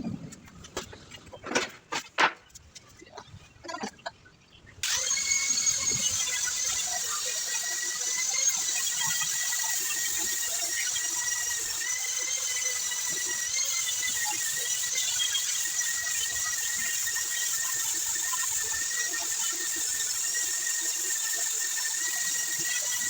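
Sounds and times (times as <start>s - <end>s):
machine whining: 4.8s - 23.0s.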